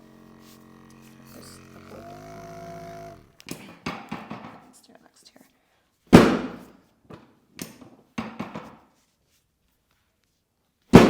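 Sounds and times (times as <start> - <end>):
small electric motor humming: 0.0 - 3.8.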